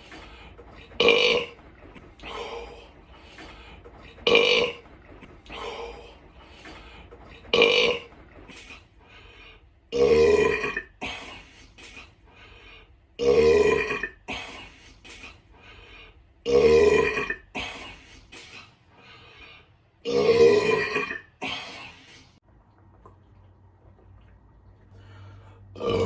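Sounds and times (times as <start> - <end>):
loud burping: 1.0 - 1.6, 4.2 - 4.8, 7.5 - 8.1, 9.9 - 11.1, 13.2 - 14.4, 16.4 - 17.7, 20.0 - 21.6, 25.8 - 26.0.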